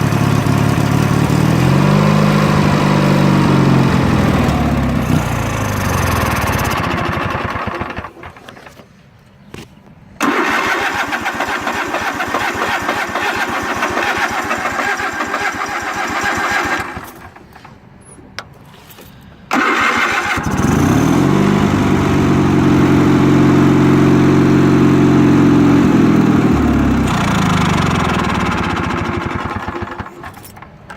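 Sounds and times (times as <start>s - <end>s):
engine revving: 0.0s - 8.3s, 10.2s - 17.1s, 19.5s - 30.2s
engine cranked by starter: 0.0s - 8.8s, 10.2s - 17.9s, 19.5s - 30.9s.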